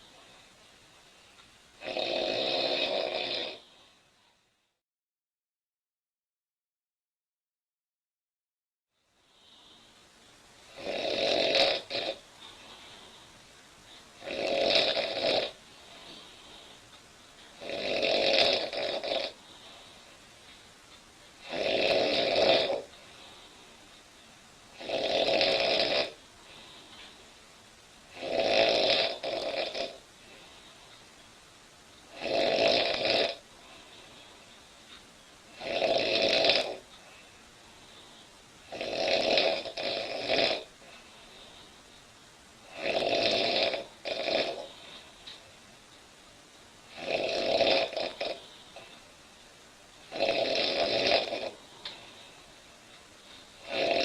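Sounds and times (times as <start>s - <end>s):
woman snoring: 1.8s - 3.8s, 10.7s - 12.3s, 14.2s - 16.2s, 17.6s - 19.4s, 21.4s - 22.9s, 24.7s - 26.8s, 28.1s - 30.4s, 32.1s - 33.5s, 35.5s - 36.9s, 38.6s - 40.8s, 42.6s - 45.0s, 46.9s - 48.8s, 50.1s - 51.9s, 53.6s - 54.0s.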